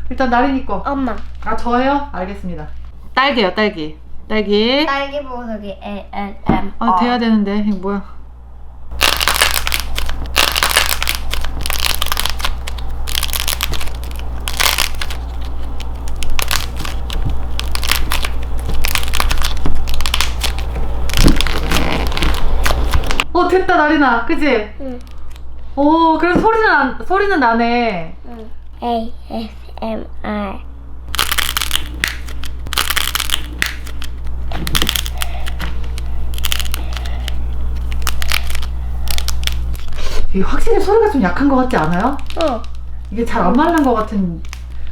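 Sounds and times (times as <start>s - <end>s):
clay crackling and crunching: 8.9s - 23.3s, 31.1s - 40.0s, 41.1s - 44.9s.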